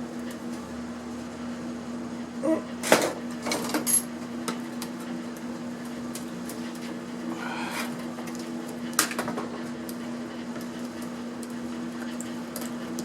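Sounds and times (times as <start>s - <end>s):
steady low hum: 7.1s - 8.4s.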